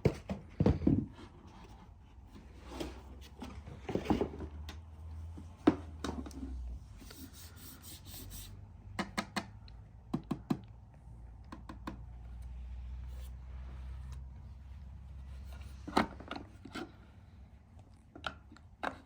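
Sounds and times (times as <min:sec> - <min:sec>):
taps and clicks of hard objects: 0:08.9 - 0:10.8, 0:11.4 - 0:12.1.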